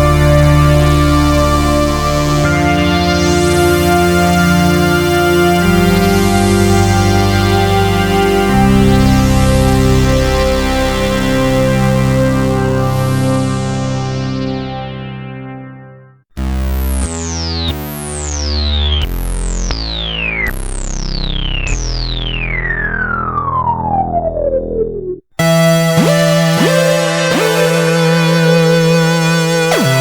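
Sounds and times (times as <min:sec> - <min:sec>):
synthesizer bass notes with sweeps: 0:00.0 - 0:30.0
sustained synthesizer sound: 0:20.5 - 0:30.0.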